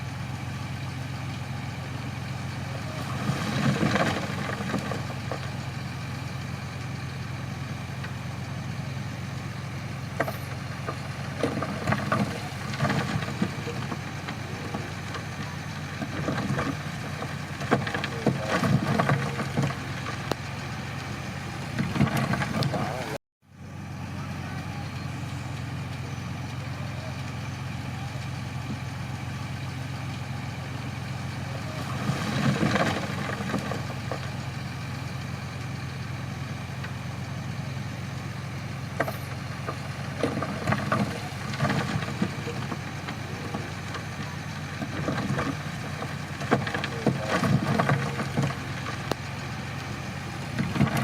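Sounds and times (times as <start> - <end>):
bulldozer diesel engine: 0.0 - 51.0
track clanking and rattling: 2.6 - 8.9, 9.6 - 23.2, 31.4 - 37.6, 38.3 - 51.0.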